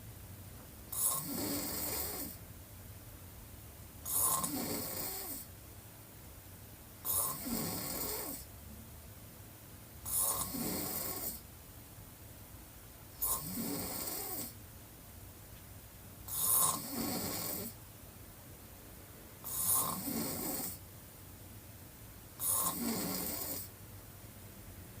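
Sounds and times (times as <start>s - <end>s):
woman snoring: 0.9s - 2.4s, 4.0s - 5.5s, 7.0s - 8.5s, 10.0s - 11.4s, 13.2s - 14.6s, 16.3s - 17.8s, 19.4s - 20.8s, 22.4s - 23.7s.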